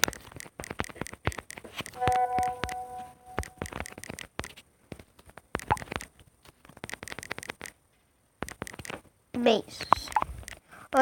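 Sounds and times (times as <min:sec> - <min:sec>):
finger tapping on phone: 0:00.1 - 0:04.5.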